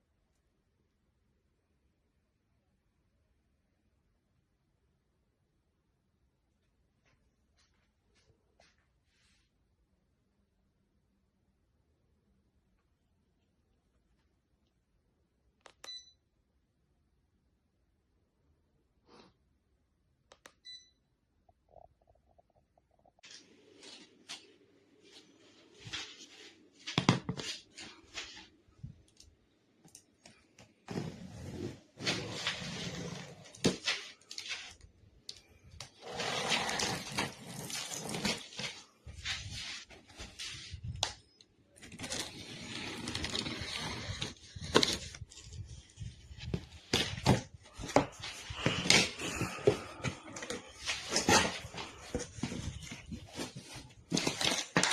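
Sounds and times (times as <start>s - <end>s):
rustling scrapes: 30.9s - 34.8s, 35.9s - 41.0s, 41.9s - 54.9s.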